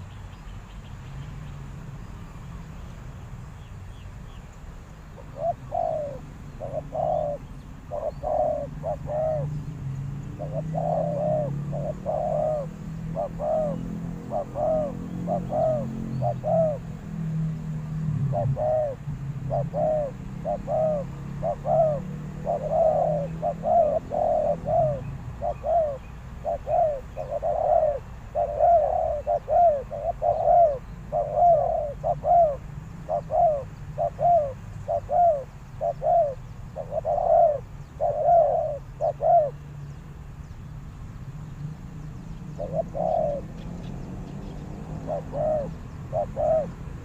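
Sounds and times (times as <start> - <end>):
dove cooing: 5.1 - 39.8, 42.4 - 47.0.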